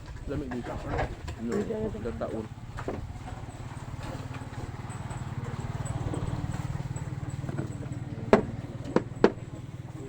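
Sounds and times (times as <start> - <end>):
vehicle engine idling: 0.0 - 10.0
sharp knocks: 8.3 - 9.5.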